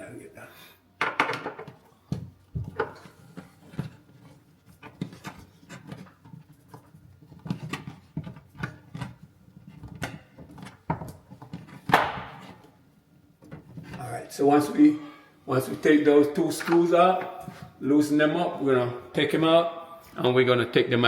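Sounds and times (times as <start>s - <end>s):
hand tools clicking and knocking: 16.5s - 17.3s.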